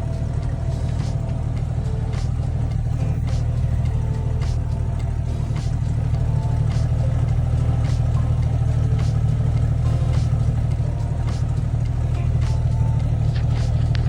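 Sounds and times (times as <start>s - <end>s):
vehicle engine idling: 0.0s - 14.0s.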